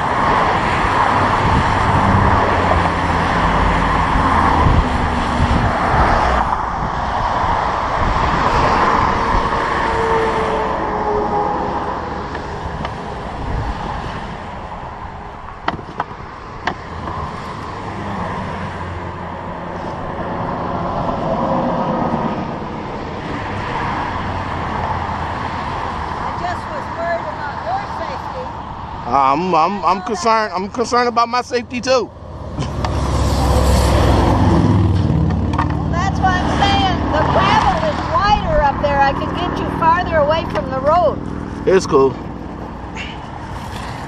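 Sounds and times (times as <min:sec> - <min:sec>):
highway traffic rushing past: 0:00.0 - 0:44.0.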